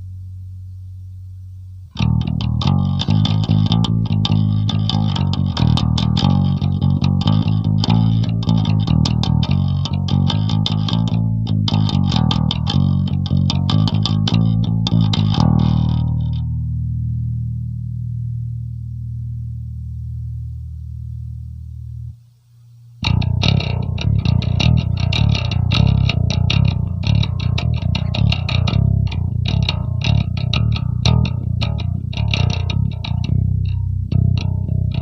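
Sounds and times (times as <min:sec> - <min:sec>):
electric bass plucked notes: 0:00.0 - 0:22.2, 0:23.0 - 0:35.0
low bass note ringing: 0:00.0 - 0:22.2.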